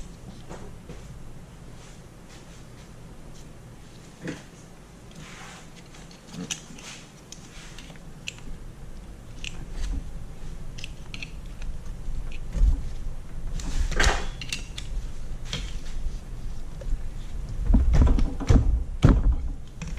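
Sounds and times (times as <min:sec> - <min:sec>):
low handling bumps: 0:15.9 - 0:19.9.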